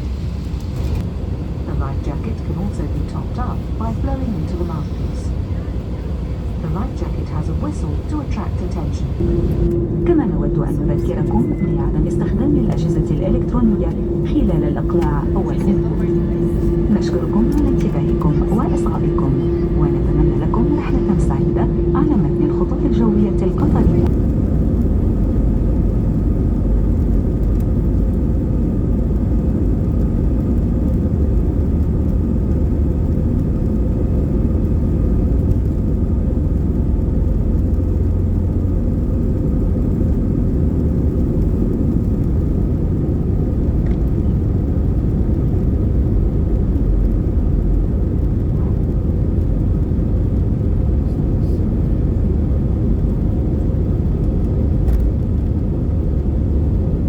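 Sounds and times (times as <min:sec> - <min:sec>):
aircraft cabin rumble: 0:00.0 - 0:57.0
faint steady hum: 0:01.0 - 0:57.0.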